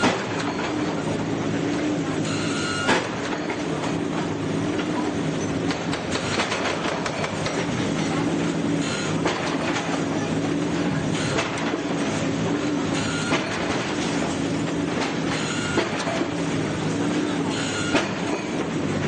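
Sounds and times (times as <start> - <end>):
knocks and clatter: 5.5 - 8.3.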